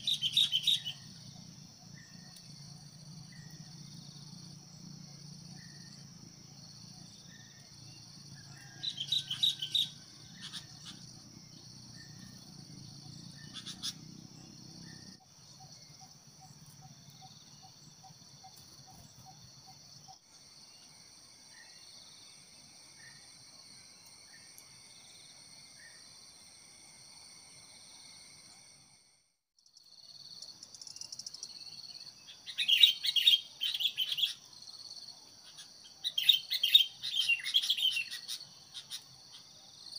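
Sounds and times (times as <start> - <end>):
high insect drone: 0.0 - 39.9
bulbuls calling: 13.4 - 14.1.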